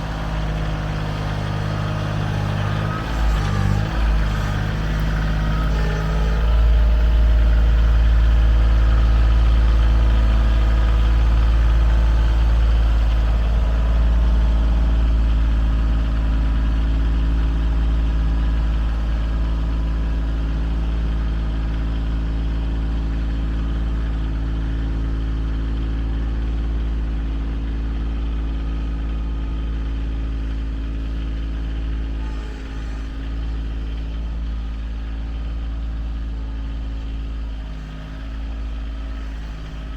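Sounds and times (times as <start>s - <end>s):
heavy engine running: 0.0s - 39.9s.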